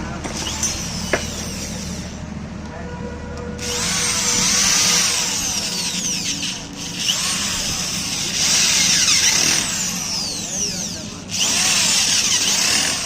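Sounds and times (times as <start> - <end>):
angle grinder motor whining: 0.3 - 2.2, 3.6 - 13.0.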